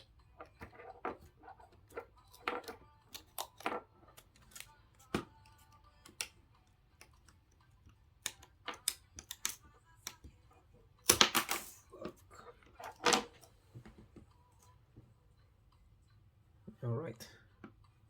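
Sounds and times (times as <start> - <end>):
small tools clicking and tapping: 0.4 - 10.3.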